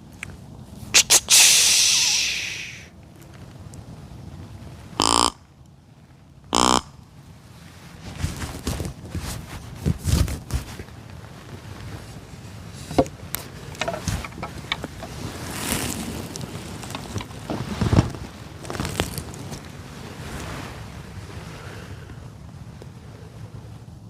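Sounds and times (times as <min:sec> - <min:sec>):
deer grunt call: 0:05.0 - 0:05.4, 0:06.5 - 0:06.9
antler rattling clacks: 0:12.8 - 0:18.2.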